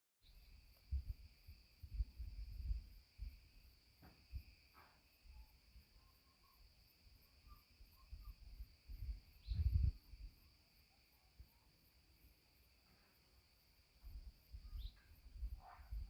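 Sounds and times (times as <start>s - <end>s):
insects chirring: 0.2s - 16.0s.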